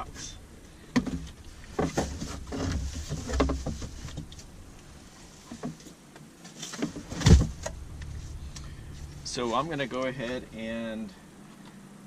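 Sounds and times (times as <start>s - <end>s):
light knocks and rustles: 1.0s - 4.5s, 5.1s - 10.4s
heavy thump: 6.9s - 10.7s.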